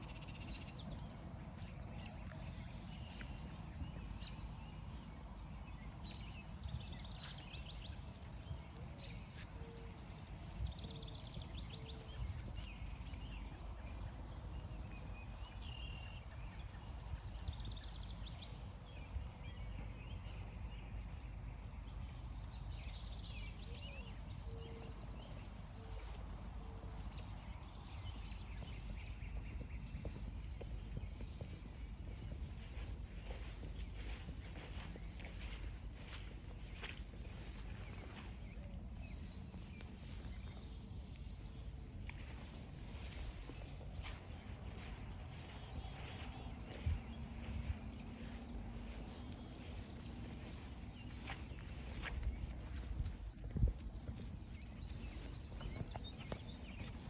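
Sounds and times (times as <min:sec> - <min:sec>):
outdoor background noise: 0:00.0 - 0:57.0
songbirds singing: 0:00.0 - 0:57.0
light footsteps: 0:24.9 - 0:57.0.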